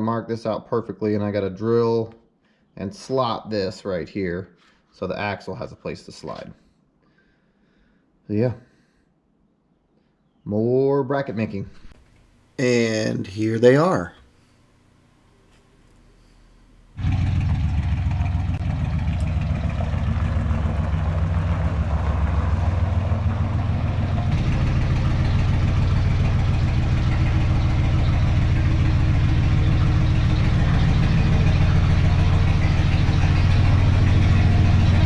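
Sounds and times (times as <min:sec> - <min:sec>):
car engine idling: 0:16.3 - 0:35.0.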